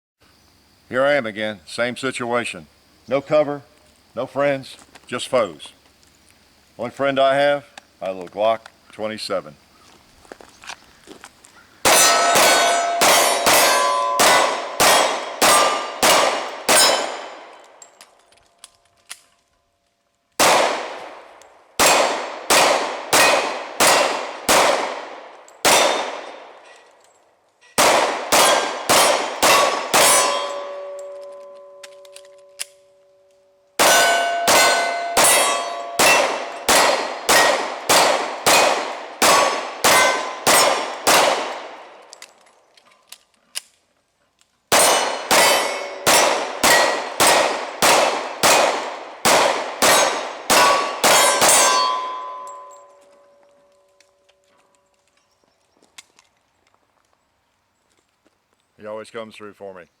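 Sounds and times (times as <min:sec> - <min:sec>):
pistol shots: 0:11.8 - 0:17.6, 0:20.4 - 0:26.6, 0:27.8 - 0:32.7, 0:33.8 - 0:42.0, 0:44.7 - 0:52.8
steel targets ringing: 0:11.9 - 0:17.4, 0:28.3 - 0:33.0, 0:33.8 - 0:40.9, 0:44.7 - 0:47.5, 0:49.8 - 0:53.7.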